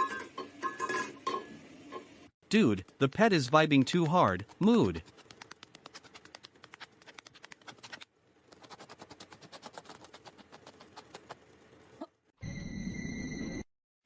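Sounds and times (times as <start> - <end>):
fast faint regular clicking: 5.0 - 7.8.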